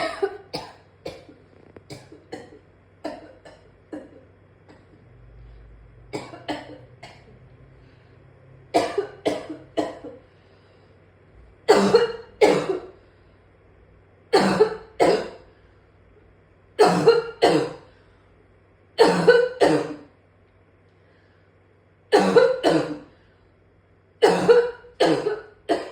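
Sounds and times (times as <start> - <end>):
person coughing harshly: 0.0 - 4.8, 6.2 - 7.3, 8.8 - 10.2, 11.7 - 13.0, 14.3 - 15.4, 16.8 - 17.9, 19.0 - 20.1, 22.1 - 23.1, 24.2 - 25.9.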